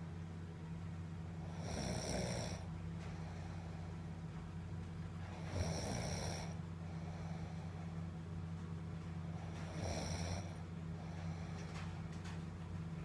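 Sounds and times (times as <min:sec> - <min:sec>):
steady low hum: 0:00.0 - 0:13.0
person snoring: 0:01.4 - 0:02.7, 0:05.3 - 0:07.5, 0:09.5 - 0:10.6.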